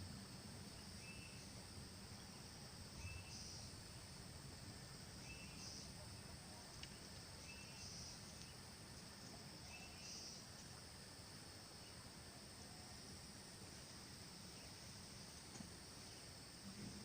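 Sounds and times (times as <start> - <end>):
faint click: 6.7 - 7.0.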